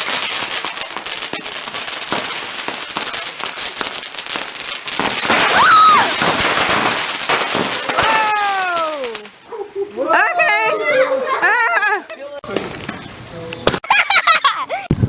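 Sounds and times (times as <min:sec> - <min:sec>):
fireworks crackling: 0:00.0 - 0:09.5, 0:12.4 - 0:13.9
high shout: 0:05.4 - 0:06.2, 0:07.8 - 0:09.3.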